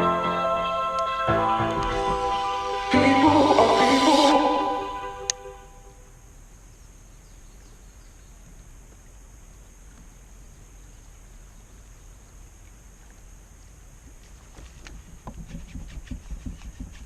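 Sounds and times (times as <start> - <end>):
steady high-pitched tone: 0.0 - 6.2
background hiss: 0.0 - 17.0.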